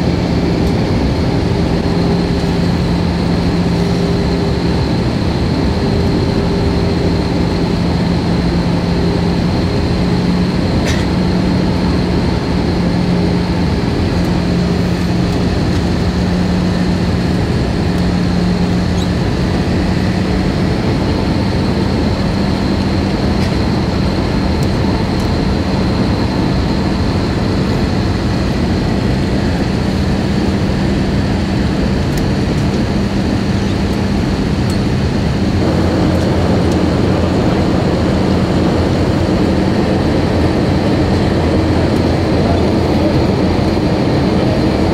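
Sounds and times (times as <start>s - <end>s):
jet engines droning: 0.0s - 44.9s
rushing air: 34.2s - 44.9s.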